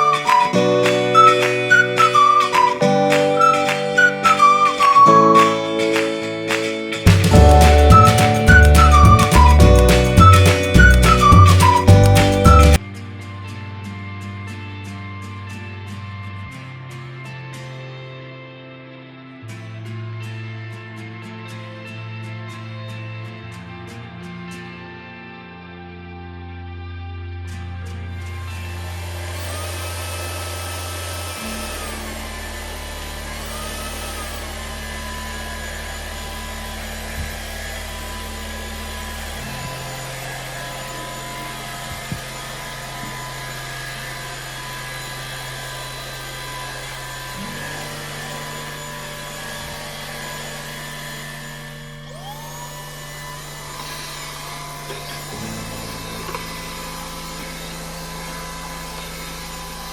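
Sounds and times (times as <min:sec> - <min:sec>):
vacuum motor whining: 0:00.0 - 0:12.8, 0:28.2 - 0:59.9
background music: 0:00.0 - 0:13.4.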